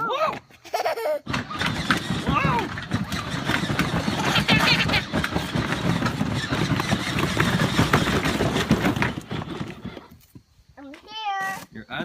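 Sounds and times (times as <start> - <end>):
wheels rolling over rough ground: 0.0 - 12.0
toy car motor running: 0.7 - 10.3
small rattles and knocks: 1.2 - 11.1.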